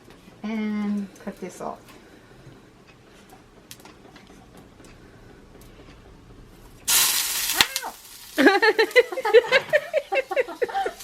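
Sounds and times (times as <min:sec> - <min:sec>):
sudden loud hiss: 0:06.9 - 0:08.6.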